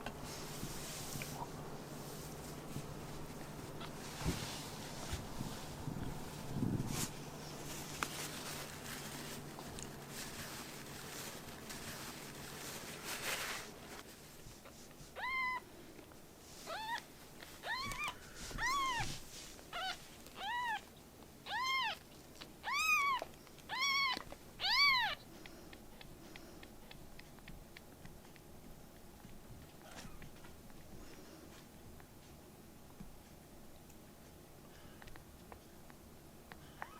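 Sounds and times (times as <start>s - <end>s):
faint rustling: 0.0s - 21.0s
kitten meowing: 15.2s - 15.6s, 16.7s - 19.1s, 19.7s - 20.8s, 21.4s - 22.0s, 22.6s - 25.2s.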